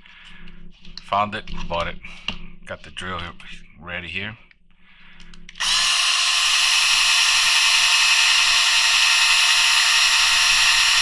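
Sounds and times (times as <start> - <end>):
electric drill whining: 5.3 - 11.0.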